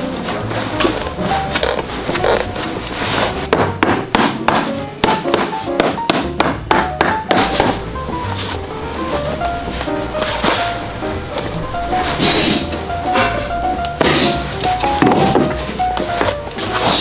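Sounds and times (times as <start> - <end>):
background music: 0.0 - 17.0
hammer tapping on a boot: 3.4 - 8.4, 11.4 - 17.0.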